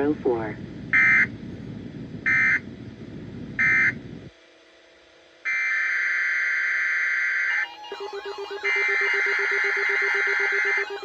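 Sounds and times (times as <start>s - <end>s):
low radio hiss: 0.0s - 5.5s
digital data bursts: 7.5s - 11.0s.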